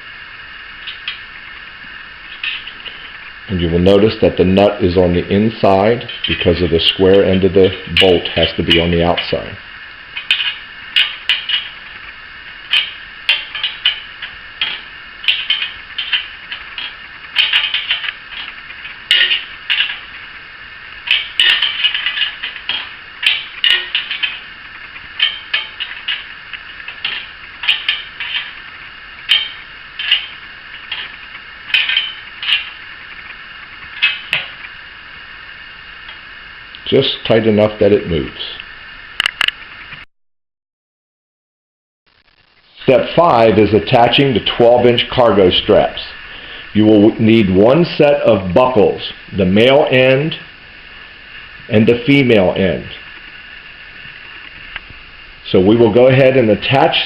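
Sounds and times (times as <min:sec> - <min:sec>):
wrench clicking and rattling: 0:10.2 - 0:11.8, 0:12.7 - 0:20.1, 0:21.0 - 0:24.5, 0:25.2 - 0:28.6, 0:29.3 - 0:32.8, 0:34.0 - 0:34.6.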